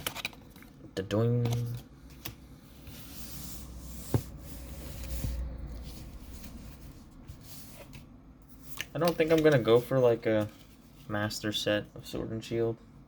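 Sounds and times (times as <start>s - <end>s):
trading cards rustling: 0.0s - 3.1s, 4.2s - 11.2s.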